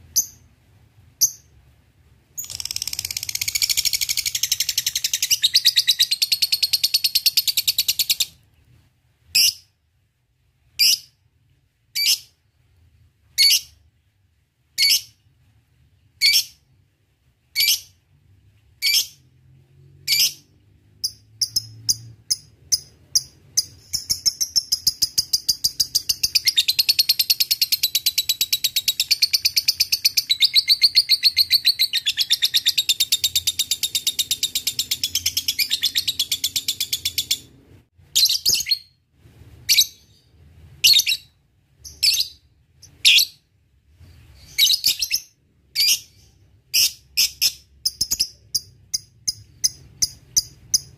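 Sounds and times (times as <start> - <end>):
lovebird chattering trill: 2.4 - 8.3
sharp bird chirps: 2.4 - 8.4.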